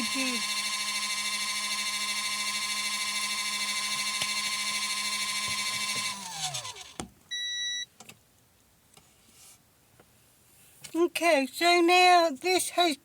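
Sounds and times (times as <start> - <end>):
washing machine motor running: 0.0 - 7.0
short electronic beep: 7.3 - 7.9.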